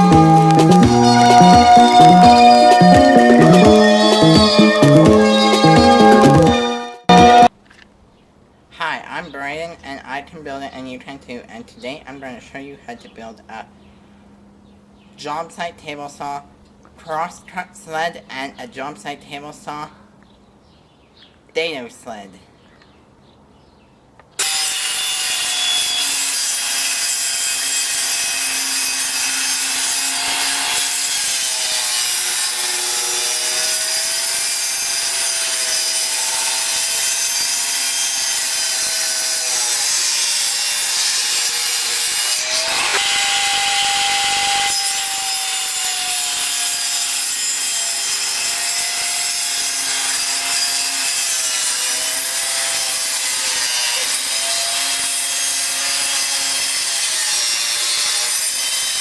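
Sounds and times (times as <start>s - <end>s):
saw blade cutting wood: 0.0s - 7.5s, 24.4s - 59.0s
table saw motor whine: 24.4s - 47.1s.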